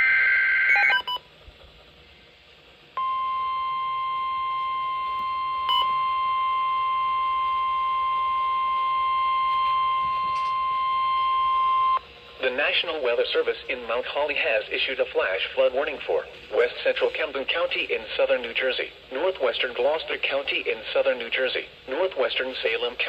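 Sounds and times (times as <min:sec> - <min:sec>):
steady warning alarm tone: 0:03.0 - 0:13.0.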